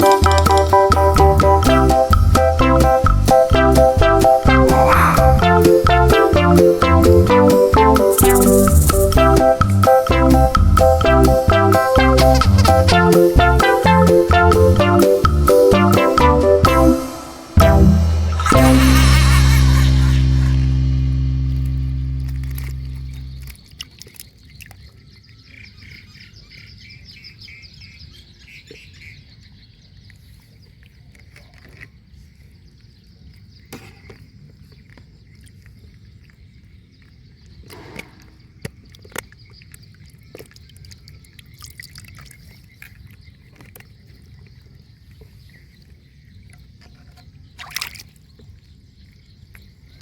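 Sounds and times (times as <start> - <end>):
background music: 0.0 - 23.4.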